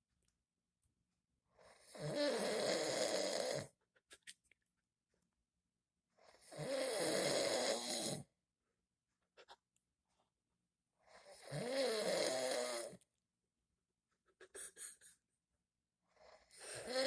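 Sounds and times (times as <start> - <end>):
man snoring: 1.7 - 3.7, 6.3 - 8.3, 11.2 - 13.0, 16.2 - 17.0.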